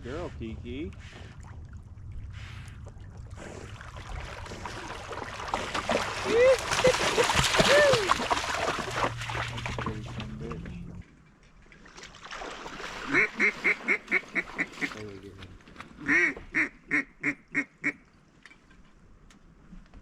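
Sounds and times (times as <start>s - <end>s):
loud duck quacks: 13.1s - 15.0s, 16.0s - 18.0s.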